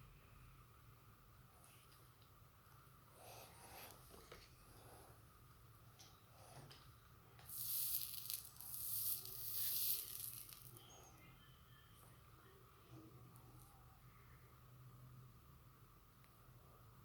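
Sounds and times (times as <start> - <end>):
soldering iron sizzling: 7.4 - 10.9.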